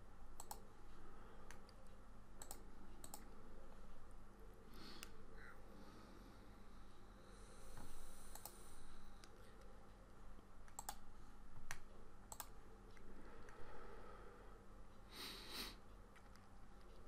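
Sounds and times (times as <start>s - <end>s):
steady low hum: 0.0s - 17.0s
sharp clicks: 0.3s - 0.7s, 2.4s - 3.4s, 8.3s - 9.4s, 10.6s - 11.0s, 11.6s - 13.6s.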